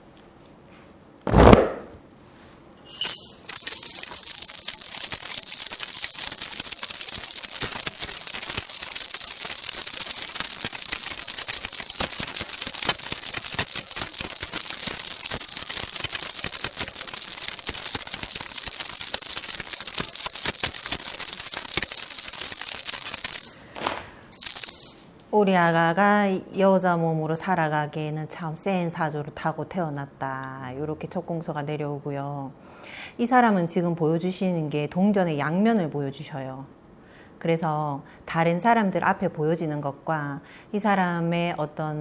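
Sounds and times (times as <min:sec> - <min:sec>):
brass bells jingling: 0:02.8 - 0:25.3.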